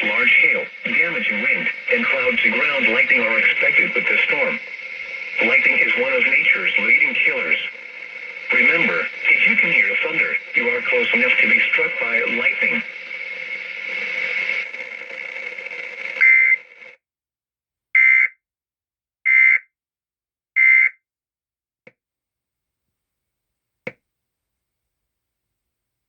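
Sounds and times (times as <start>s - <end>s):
hiss: 0.0s - 16.2s
steady high tone: 0.0s - 16.8s
buzzy digital data bursts: 0.0s - 16.9s.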